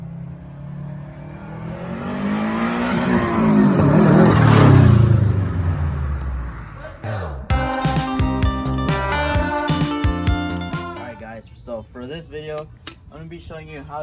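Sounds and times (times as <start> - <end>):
car engine accelerating past: 0.0 - 7.4.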